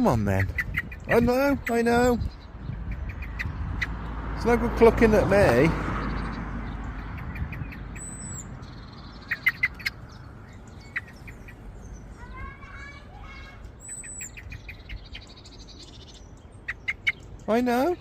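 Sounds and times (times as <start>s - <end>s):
bird clucking notes: 0.0s - 18.0s
rising bird chirps: 5.6s - 18.0s.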